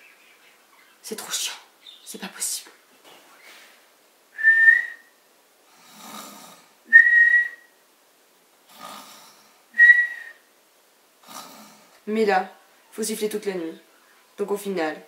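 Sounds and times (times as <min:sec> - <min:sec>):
person whistling: 0:04.4 - 0:05.1, 0:06.9 - 0:07.7, 0:09.8 - 0:10.4
person snoring: 0:05.7 - 0:06.8, 0:08.7 - 0:09.6, 0:11.2 - 0:12.0.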